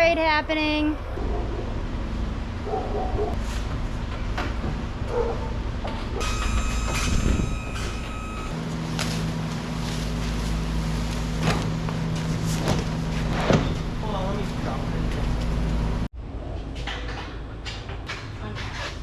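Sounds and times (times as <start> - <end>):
vehicle engine rumble: 0.0 - 18.8
high beep: 6.2 - 8.6.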